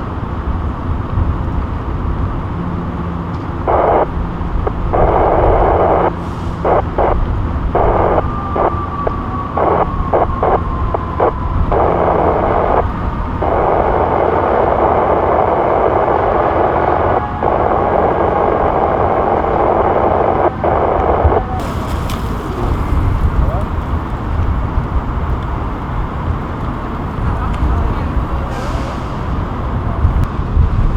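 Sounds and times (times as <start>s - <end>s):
low city rumble: 0.0s - 30.9s
wind buffeting microphone: 0.0s - 30.9s
faint whine falling in pitch: 3.6s - 28.2s.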